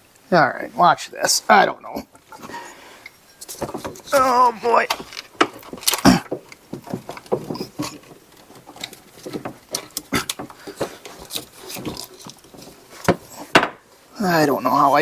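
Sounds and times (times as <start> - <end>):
metal clunks and scrapes: 2.3 - 4.1, 4.9 - 13.9.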